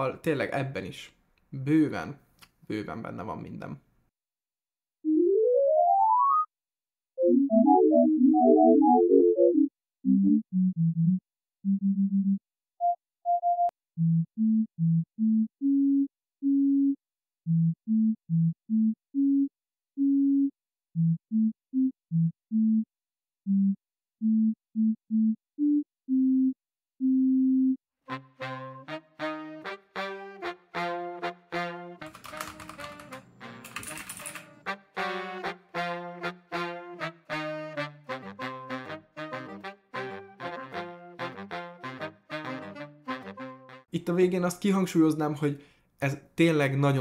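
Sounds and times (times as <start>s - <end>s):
synthesized electronic music: 7.2s - 10.4s.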